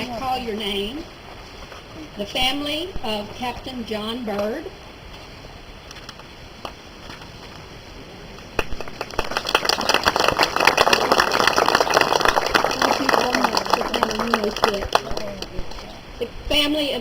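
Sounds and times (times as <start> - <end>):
crowd applauding: 8.6 - 15.6.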